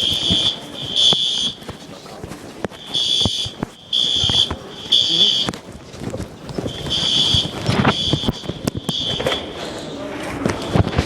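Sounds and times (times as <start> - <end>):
fire alarm beeps: 0.0 - 1.7, 2.7 - 5.6, 6.6 - 9.7.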